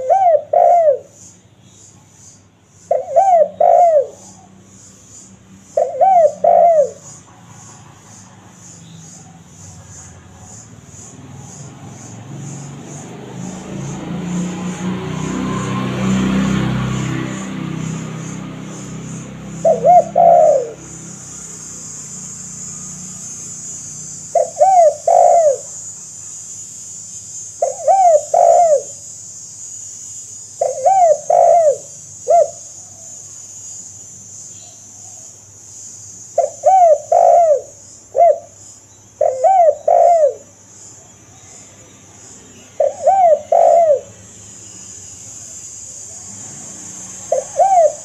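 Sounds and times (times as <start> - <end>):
dove cooing: 0.0 - 1.2, 2.9 - 4.6, 5.7 - 22.0, 24.0 - 25.8, 27.6 - 29.0, 30.6 - 33.2, 36.4 - 38.6, 39.2 - 40.6, 42.7 - 44.3, 46.0 - 48.0.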